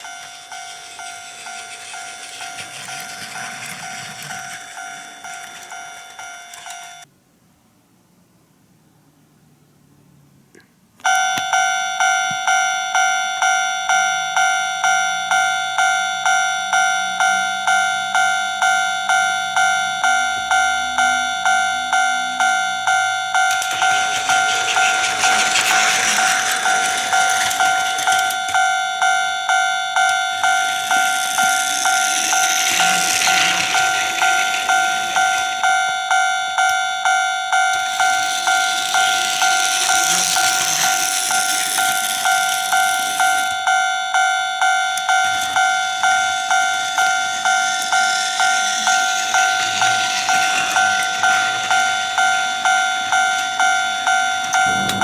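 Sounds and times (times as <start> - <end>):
electronic level-crossing bell: 0.0 - 7.1, 11.1 - 55.0
toy trains rattling: 0.0 - 7.1, 22.8 - 43.8, 44.7 - 55.0.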